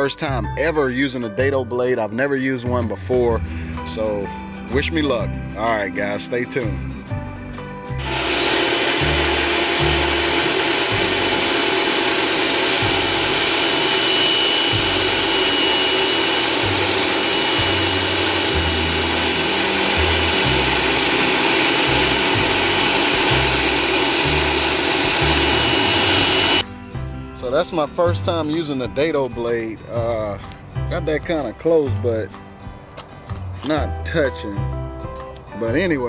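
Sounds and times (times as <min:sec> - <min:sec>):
table saw cutting wood: 0:07.7 - 0:26.7.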